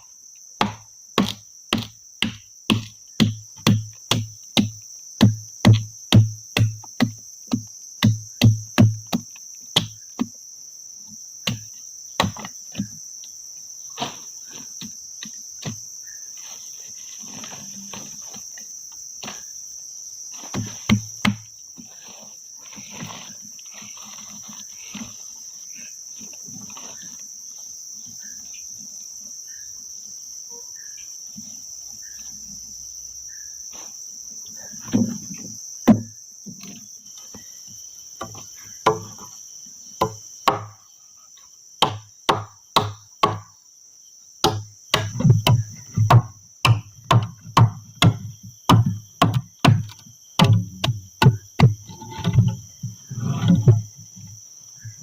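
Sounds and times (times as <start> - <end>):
crickets chirping: 0.0 - 55.0
strikes on wood: 0.6 - 10.3, 38.2 - 39.3, 40.0 - 40.8, 41.8 - 43.5, 44.4 - 52.6.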